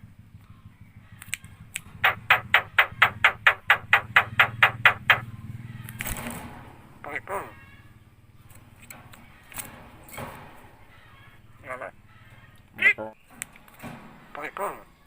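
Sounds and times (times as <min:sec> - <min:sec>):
bird calling rapidly: 0:01.9 - 0:05.3.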